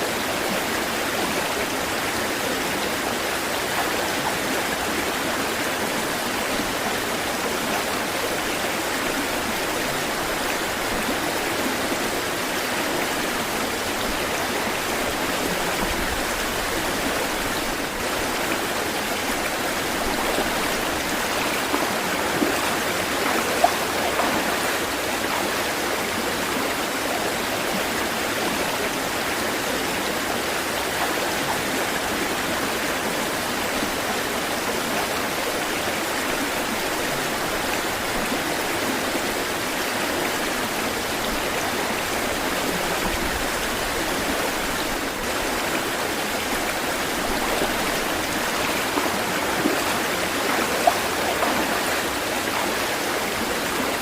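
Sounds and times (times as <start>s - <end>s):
water rushing: 0.0s - 54.0s.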